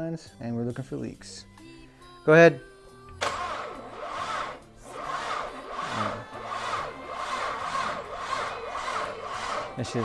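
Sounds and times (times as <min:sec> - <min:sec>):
engine cranking without firing: 0:03.0 - 0:10.0.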